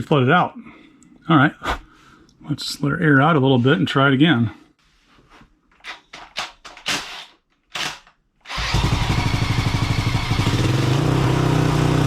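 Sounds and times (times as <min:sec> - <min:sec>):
engine turning over: 0:08.5 - 0:12.0.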